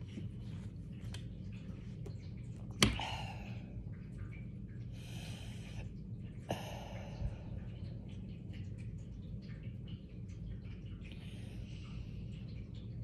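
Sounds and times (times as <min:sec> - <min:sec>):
breathing: 0:04.9 - 0:05.9.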